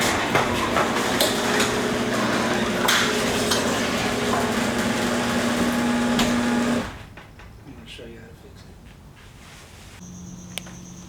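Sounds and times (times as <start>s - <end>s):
garage door motor hum: 0.0s - 7.2s
metal rollers clanking on tracks: 0.0s - 7.4s.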